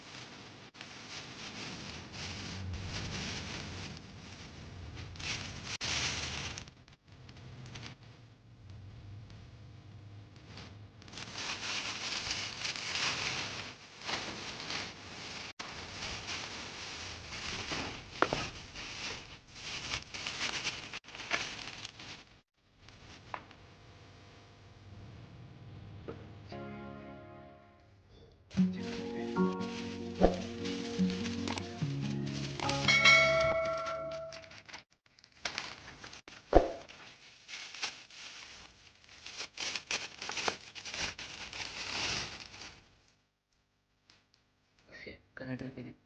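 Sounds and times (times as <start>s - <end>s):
packaging rustling: 11.1s - 22.4s, 28.7s - 42.9s
music with chime-like notes: 30.9s - 34.4s.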